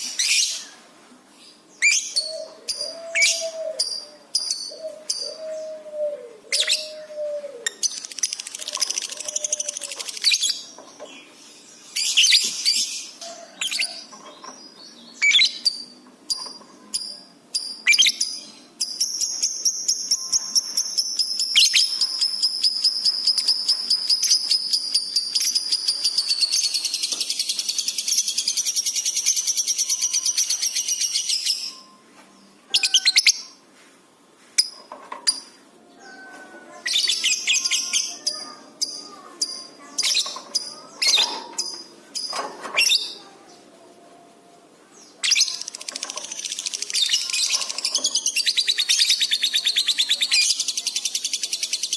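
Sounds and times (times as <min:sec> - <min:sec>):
lovebird chirping and trilling: 0:06.5 - 0:10.8, 0:15.2 - 0:32.0, 0:32.7 - 0:33.6, 0:34.6 - 0:43.3, 0:45.0 - 0:51.9.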